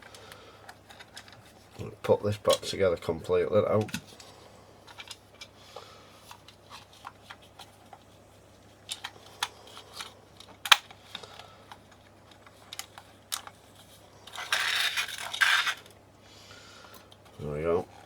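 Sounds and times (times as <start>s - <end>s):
plastic parts clicking and tapping: 3.8s - 4.3s, 8.8s - 13.6s.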